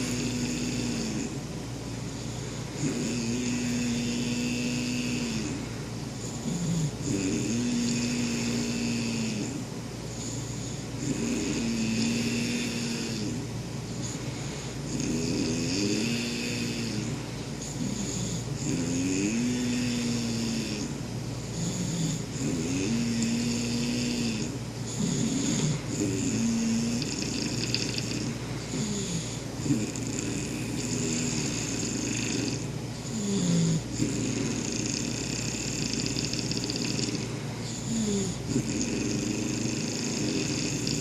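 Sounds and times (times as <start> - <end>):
snoring with pitched tone: 0.0 - 1.4, 2.8 - 5.6, 6.4 - 9.6, 11.0 - 13.4, 14.9 - 41.0.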